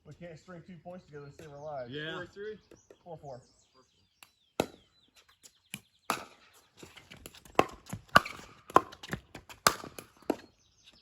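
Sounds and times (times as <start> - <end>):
faint bird chirps: 0.0 - 7.0
paddles hitting plastic ball: 5.8 - 10.6.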